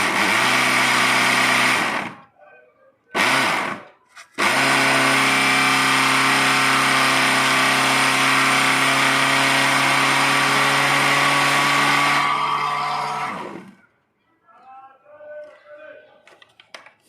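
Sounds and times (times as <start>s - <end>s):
mixer grinder motor whine: 0.0s - 2.2s, 3.2s - 13.8s.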